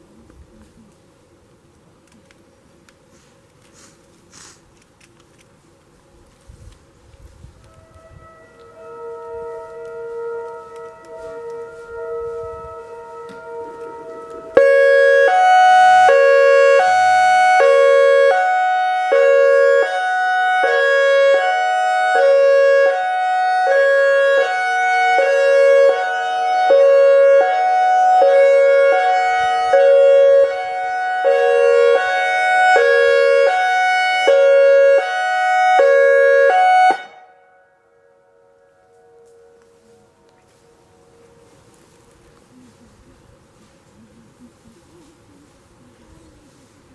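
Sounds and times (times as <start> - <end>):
hi-lo warning siren: 6.0 - 42.8.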